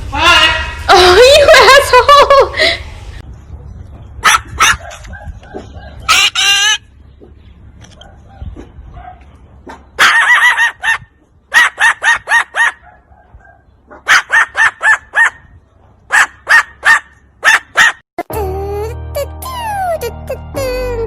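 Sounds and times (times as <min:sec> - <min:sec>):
parrot calling: 0:05.4 - 0:06.9
music: 0:18.2 - 0:21.0.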